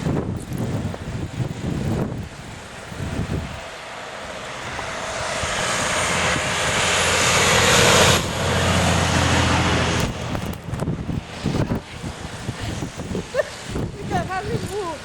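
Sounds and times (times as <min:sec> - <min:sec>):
engine running: 0:00.0 - 0:15.0.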